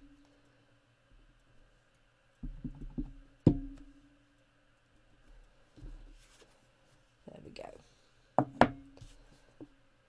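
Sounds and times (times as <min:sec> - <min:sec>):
stamp knocking onto desk: 0:02.4 - 0:03.8.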